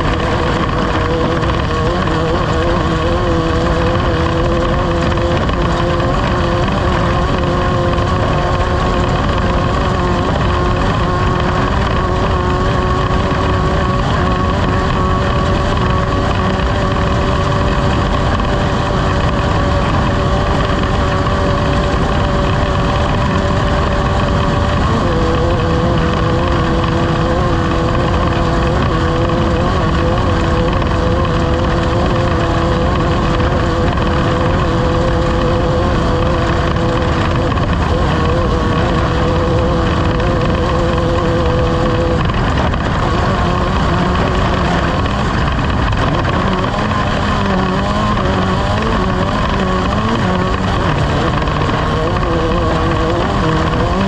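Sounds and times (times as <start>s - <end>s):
low rumble: 0.0s - 54.0s
race vehicle engine running: 0.0s - 54.0s.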